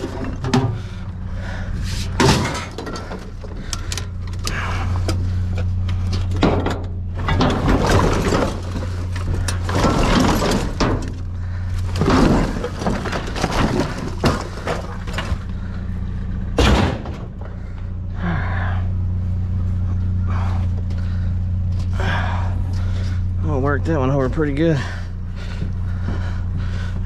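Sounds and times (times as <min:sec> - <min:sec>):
scrap scraping: 0:00.0 - 0:02.8
scrap banging in dumpster: 0:00.0 - 0:03.6, 0:05.9 - 0:15.8
low engine hum: 0:00.0 - 0:27.0.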